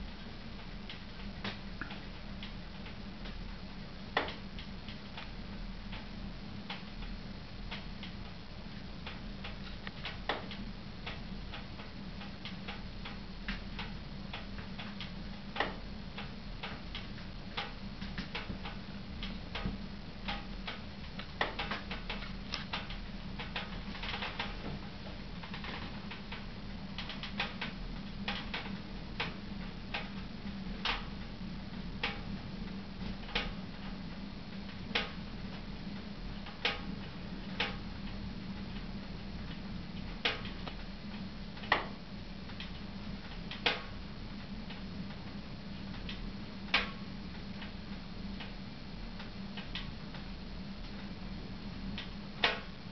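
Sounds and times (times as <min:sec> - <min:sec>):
wood stove ticking and crackling: 0:00.0 - 0:52.9.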